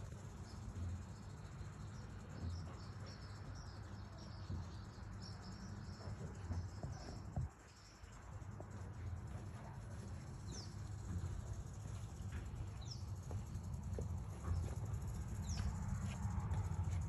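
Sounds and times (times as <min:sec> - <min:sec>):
bird chirping: 0:00.0 - 0:08.2, 0:10.4 - 0:16.2
rattlesnake rattling: 0:00.0 - 0:17.0.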